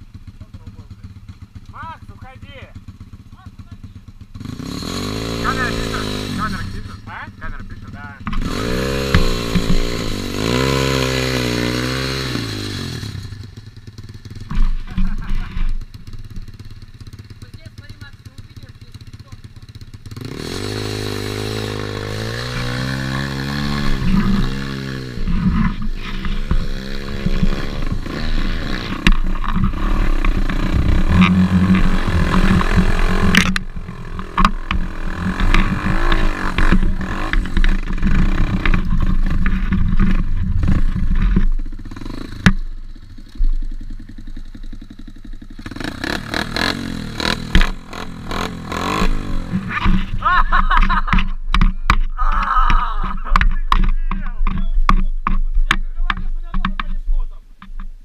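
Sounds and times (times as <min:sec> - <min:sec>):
motorbike engine revving: 0:00.0 - 0:57.9
sharp knocks: 0:08.2 - 0:10.2.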